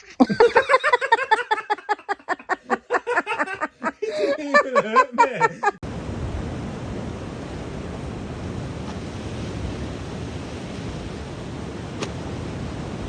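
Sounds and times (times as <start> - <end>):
person laughing hard: 0.0 - 5.8.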